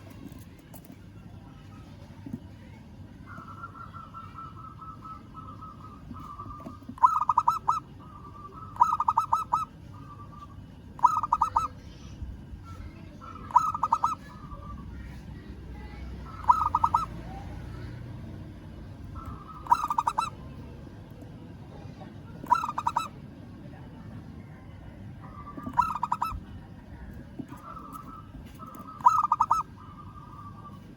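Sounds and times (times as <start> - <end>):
low steady rumble: 0.0 - 30.9
dove cooing: 3.3 - 11.8, 13.2 - 15.0, 16.2 - 18.1, 19.1 - 20.5, 22.4 - 23.1, 25.3 - 26.5, 27.4 - 30.8.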